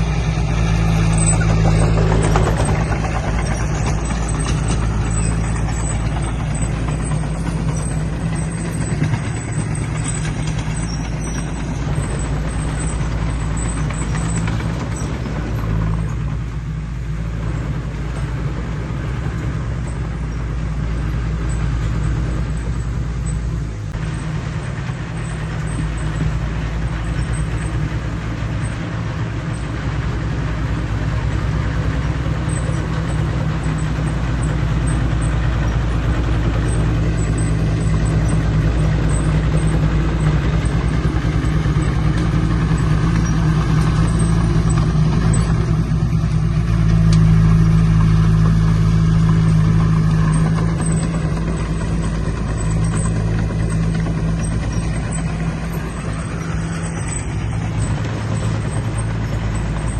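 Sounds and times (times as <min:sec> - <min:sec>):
heavy diesel machinery droning: 0:00.0 - 0:59.9.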